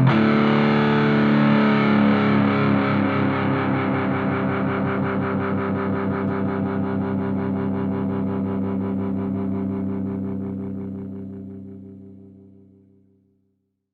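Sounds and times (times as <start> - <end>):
distorted electric guitar: 0.0 - 13.0.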